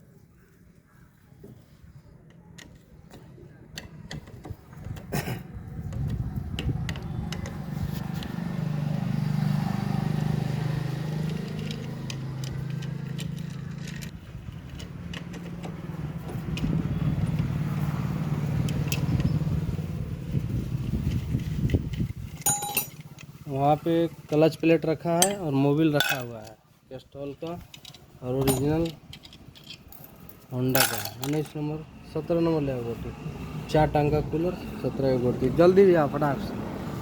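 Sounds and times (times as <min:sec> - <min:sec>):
metallic tool clicks: 0:25.2 - 0:26.3.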